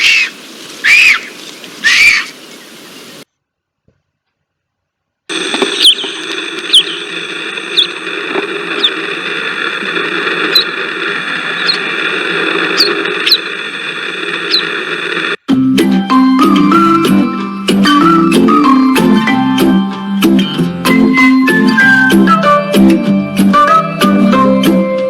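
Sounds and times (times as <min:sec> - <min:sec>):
bird calling sharply: 0:00.0 - 0:03.2, 0:05.4 - 0:09.1, 0:12.7 - 0:13.6
high whine and hiss: 0:05.3 - 0:15.4.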